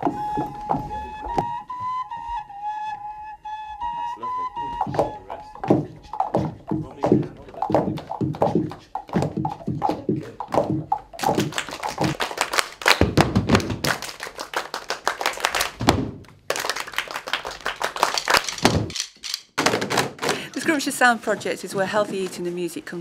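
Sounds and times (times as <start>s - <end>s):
group percussion taps and knocks: 0.0s - 1.6s, 4.7s - 20.9s.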